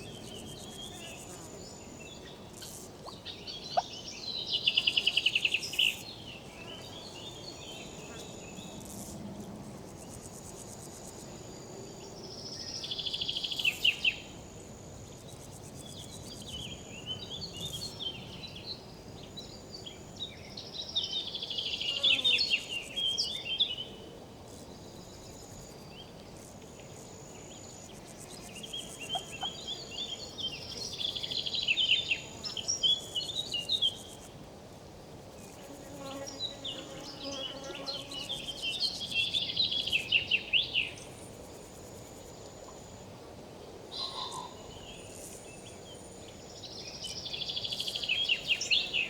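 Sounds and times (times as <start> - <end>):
songbird chirping: 0.0 - 9.1, 15.1 - 34.3, 35.4 - 41.2, 43.9 - 49.0
insects buzzing: 0.0 - 23.4, 35.3 - 43.1.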